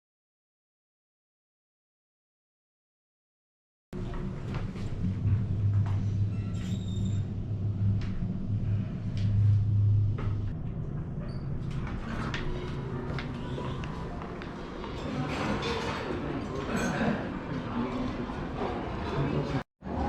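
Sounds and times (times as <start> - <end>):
low hum: 4.0 - 16.6.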